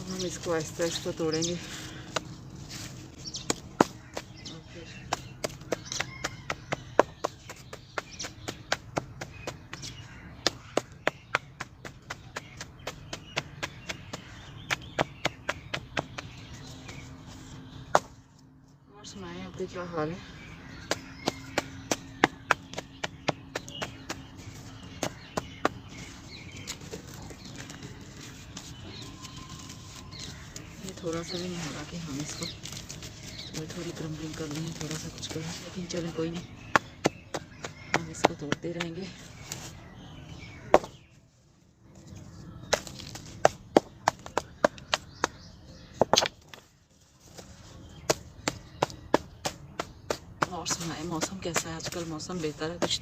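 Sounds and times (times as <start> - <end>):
sharp knocks on hard cement: 40.7 - 41.0, 42.7 - 46.6.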